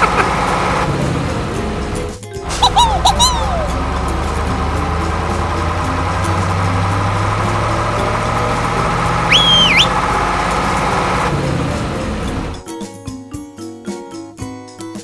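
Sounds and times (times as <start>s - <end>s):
vehicle engine idling: 0.0s - 12.6s
high whistle: 9.1s - 10.0s.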